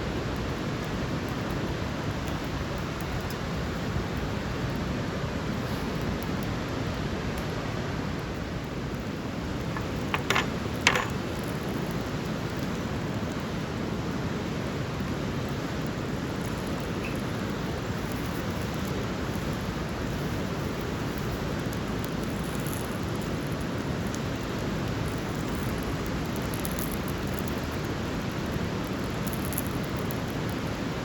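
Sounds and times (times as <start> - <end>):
steady rushing outdoor noise: 0.0 - 31.0.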